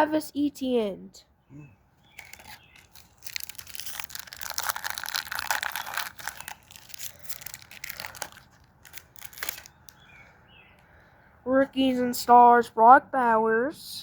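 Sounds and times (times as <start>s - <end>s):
foil wrapper tearing and crinkling: 2.1s - 10.0s.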